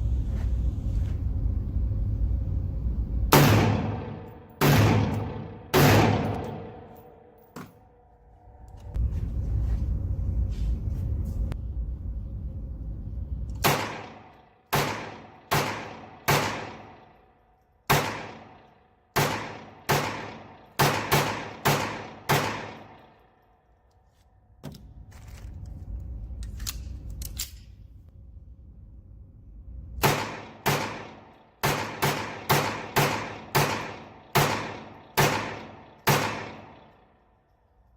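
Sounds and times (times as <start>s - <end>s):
low rumbling noise: 0.0s - 16.2s, 24.8s - 31.2s
gunshots with ringing tail: 3.3s - 7.4s, 13.6s - 17.2s, 17.9s - 23.2s, 30.0s - 37.1s.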